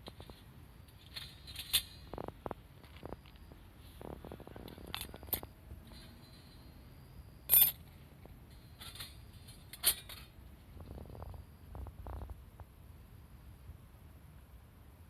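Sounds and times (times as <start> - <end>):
light metallic clinks and knocks: 0.0 - 3.6, 4.5 - 10.5.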